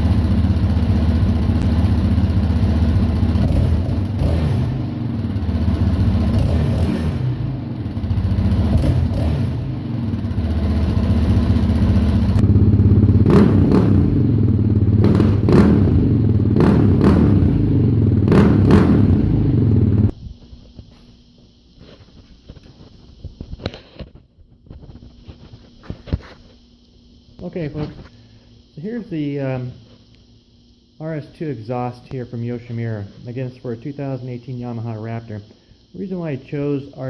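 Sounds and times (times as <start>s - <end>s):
atv engine revving: 0.0s - 20.1s.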